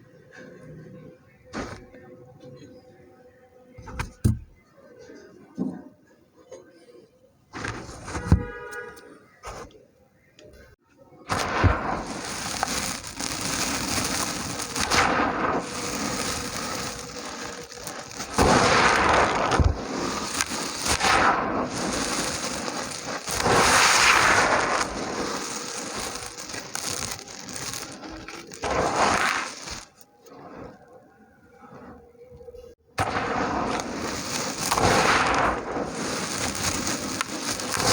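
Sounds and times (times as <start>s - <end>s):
dirt chunks crushed and crumbling: 11.3s - 30.1s, 33.0s - 37.9s.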